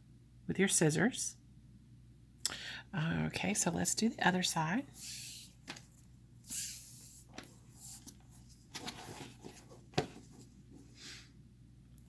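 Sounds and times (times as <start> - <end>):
cord rustling and sliding: 5.0 - 11.4.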